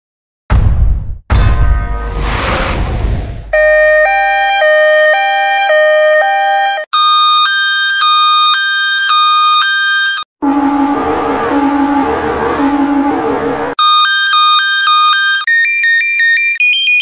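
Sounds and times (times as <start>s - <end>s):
higher-pitched two-tone siren: 3.5s - 15.8s
two-tone ambulance siren: 3.6s - 17.0s.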